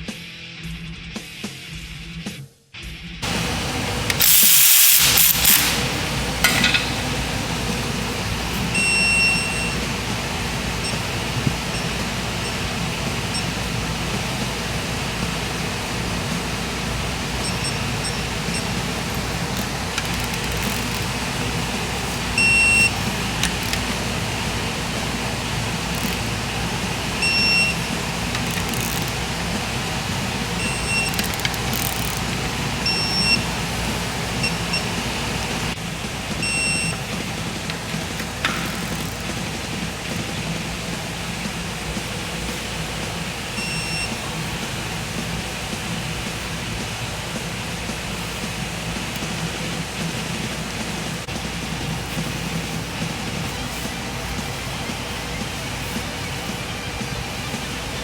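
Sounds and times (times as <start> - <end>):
steady machine noise: 3.2 - 58.0
short high-pitched beeps: 8.7 - 9.9, 22.4 - 23.0, 36.4 - 37.0.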